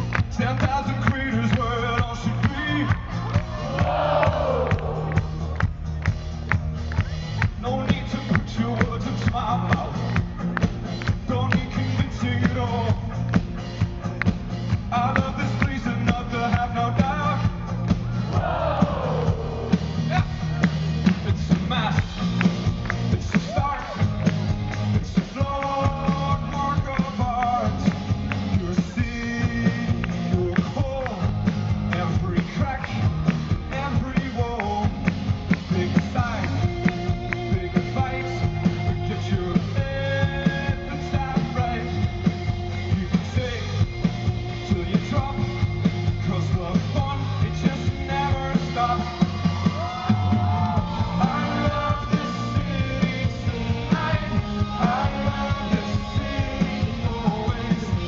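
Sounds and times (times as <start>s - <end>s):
drum beat: 0.0s - 58.0s
rock band playing live: 0.0s - 58.0s
person singing: 35.7s - 42.1s, 46.3s - 58.0s.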